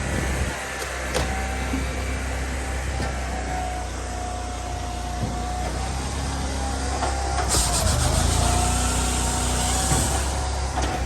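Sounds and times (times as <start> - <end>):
vehicle engine rumbling: 0.0 - 11.0
hiss: 7.5 - 10.4.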